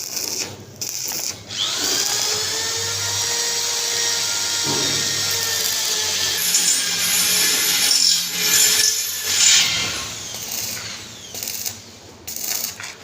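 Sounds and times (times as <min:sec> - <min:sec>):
power tool grinding metal: 0:01.5 - 0:11.7.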